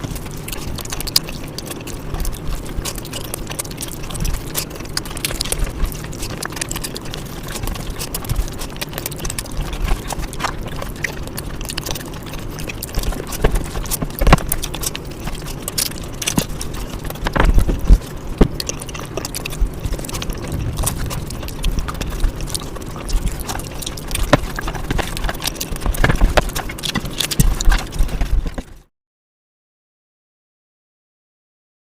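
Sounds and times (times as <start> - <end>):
person chewing food: 0.0 - 28.9
low rumble: 19.5 - 26.6.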